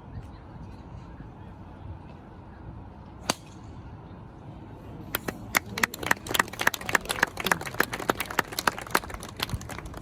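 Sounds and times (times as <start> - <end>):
spectators clapping: 5.2 - 10.0.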